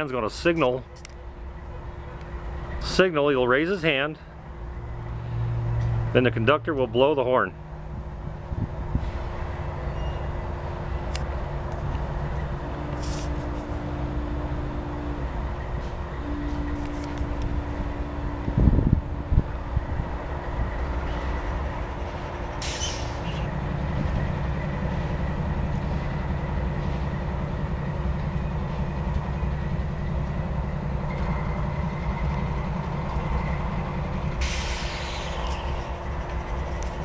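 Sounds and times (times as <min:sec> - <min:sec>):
diesel locomotive engine: 0:00.0 - 0:37.0
air brakes hissing: 0:22.6 - 0:23.6, 0:34.3 - 0:36.1.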